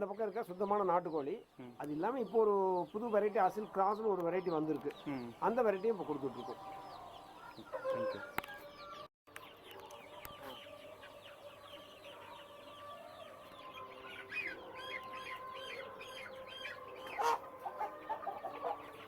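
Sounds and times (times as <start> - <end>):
chicks peeping and clucking: 0.0 - 19.0
chicken squawk: 6.6 - 9.0, 12.1 - 19.0.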